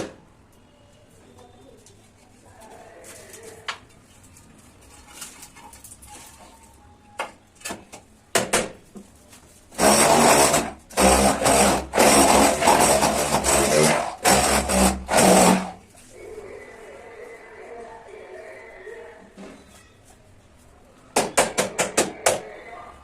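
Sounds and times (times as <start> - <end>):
power tool running in bursts: 9.8 - 15.8.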